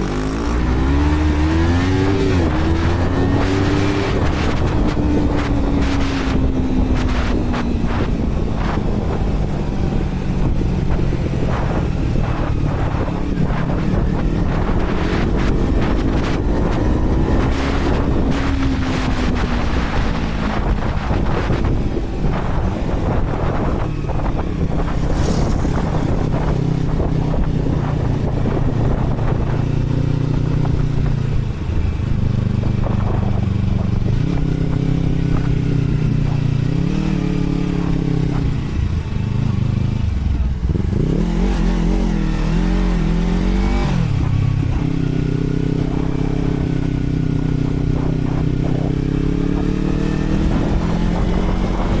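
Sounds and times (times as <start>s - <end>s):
motorcycle engine revving: 0.0s - 52.0s
wind noise on microphone: 0.0s - 52.0s.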